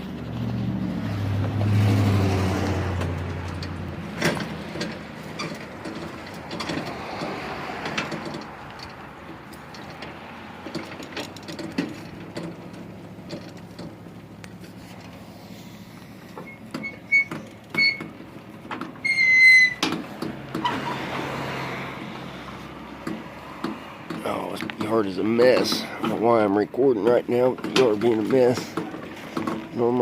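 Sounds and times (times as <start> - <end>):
go-kart wheels rattling: 0.0 - 30.0
short high squeaks: 16.3 - 18.2, 19.0 - 20.0, 20.6 - 21.2.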